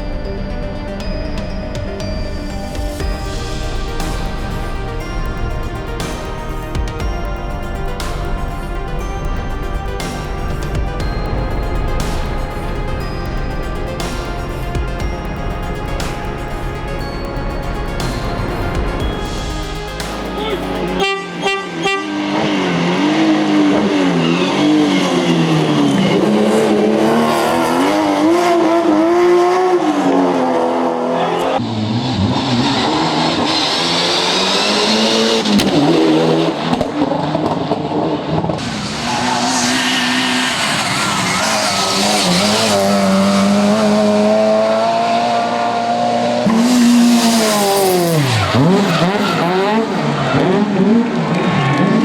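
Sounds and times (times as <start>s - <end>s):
rally car engines revving: 1.9s - 52.0s
car passing close: 22.1s - 52.0s.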